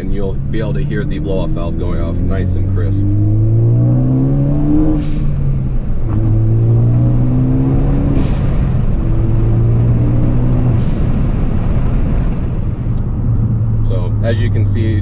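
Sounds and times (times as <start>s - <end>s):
turbocharged car engine accelerating: 0.0s - 15.0s.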